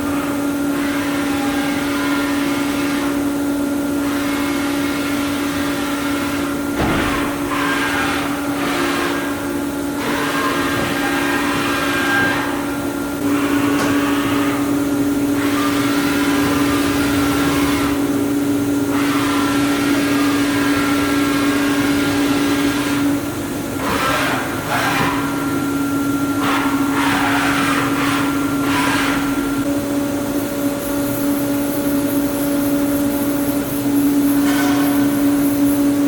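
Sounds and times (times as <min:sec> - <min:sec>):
machine hum: 0:00.0 - 0:36.0
machine hiss: 0:13.3 - 0:36.0.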